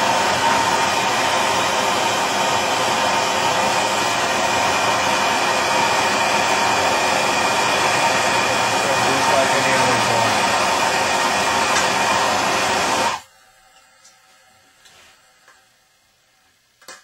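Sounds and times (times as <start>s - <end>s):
soldering torch hissing: 0.0s - 13.3s.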